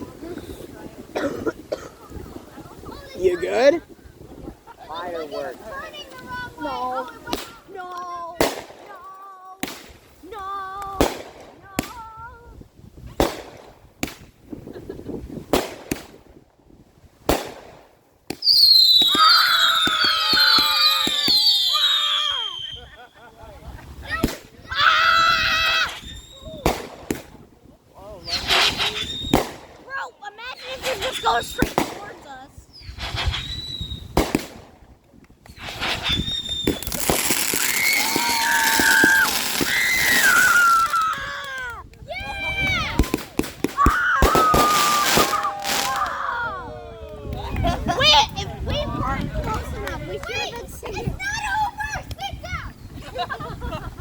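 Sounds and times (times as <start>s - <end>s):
firework bangs: 7.2s - 7.8s, 8.4s - 9.0s, 9.6s - 12.2s, 13.0s - 16.4s, 17.2s - 23.1s, 25.9s - 27.5s, 28.3s - 29.9s, 30.6s - 32.4s, 33.0s - 34.9s, 35.5s - 41.5s, 42.6s - 46.2s
crackling pops: 7.2s - 10.1s, 13.2s - 14.4s, 15.5s - 16.3s, 17.3s - 21.8s, 26.6s - 27.4s, 28.4s - 29.9s, 34.1s - 42.1s, 42.9s - 46.2s
whistling fireworks: 17.3s - 23.4s, 25.6s - 27.4s, 28.2s - 29.9s, 30.5s - 34.8s, 35.4s - 41.6s, 42.5s - 46.3s.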